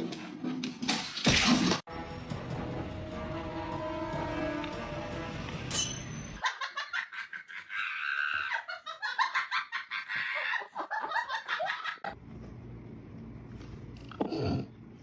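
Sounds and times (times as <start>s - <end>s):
high-pitched laughter: 6.4s - 12.2s.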